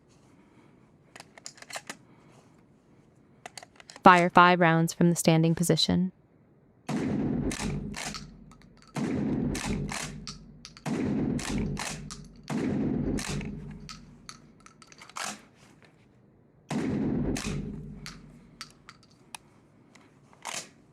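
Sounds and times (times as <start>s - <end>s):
gunshots with long echo: 6.9s - 14.5s, 16.7s - 18.8s.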